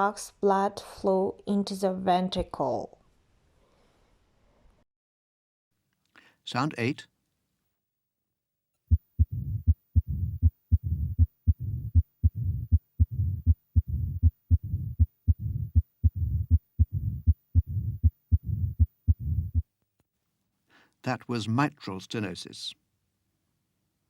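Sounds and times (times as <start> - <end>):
heartbeat with rumbling murmur: 8.9 - 19.6.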